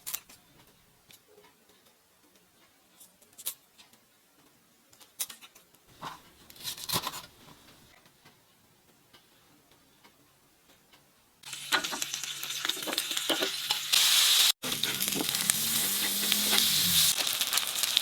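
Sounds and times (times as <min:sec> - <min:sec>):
food sizzling in a pan: 0:11.4 - 0:18.0.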